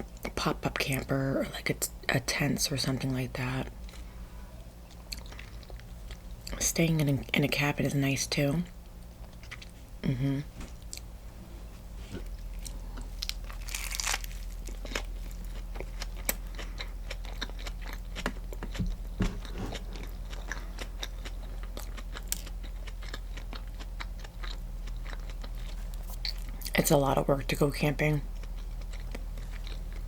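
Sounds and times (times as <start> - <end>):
low hum: 0.0 - 30.0
chewing crusty bread: 4.7 - 7.1, 8.6 - 10.0, 12.1 - 30.0.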